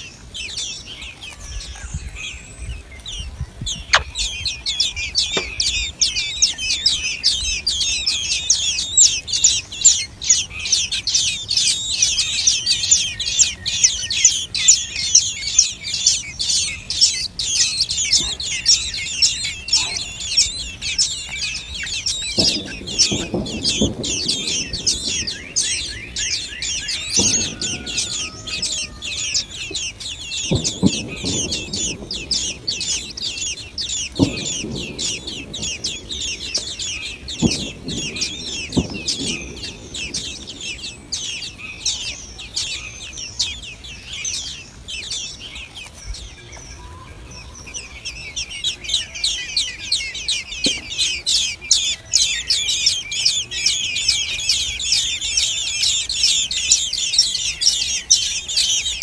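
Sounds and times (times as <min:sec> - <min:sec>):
nestlings cheeping: 0:00.0 - 0:59.0
low thumps: 0:30.4 - 0:41.8.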